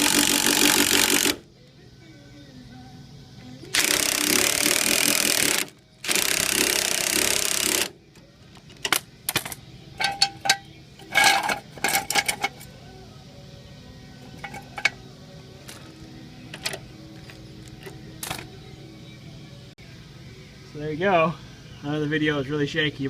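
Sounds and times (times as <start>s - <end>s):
impact wrench hammering: 0.0s - 1.4s, 3.7s - 7.9s
metallic clicks and clanks: 8.6s - 12.7s, 14.4s - 15.0s, 16.5s - 18.5s.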